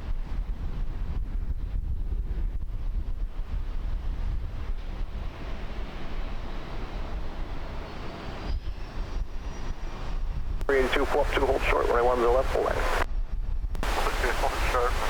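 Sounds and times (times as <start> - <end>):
wind buffeting microphone: 0.0 - 15.0
faint rising whine: 10.6 - 13.0, 13.8 - 15.0
jet engines roaring: 10.6 - 13.1, 13.8 - 15.0.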